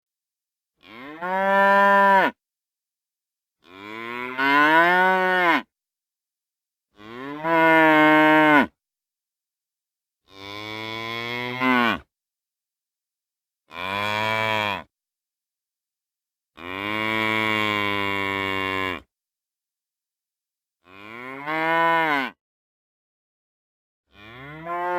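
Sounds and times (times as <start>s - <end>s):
cow mooing: 0.8s - 2.4s, 3.6s - 5.7s, 7.0s - 8.7s, 10.3s - 12.1s, 16.6s - 19.1s, 20.9s - 22.4s, 24.1s - 24.9s.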